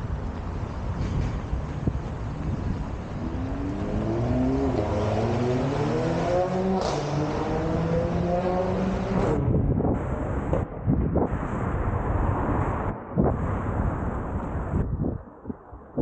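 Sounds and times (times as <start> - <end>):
vehicle engine accelerating: 2.6 - 14.2.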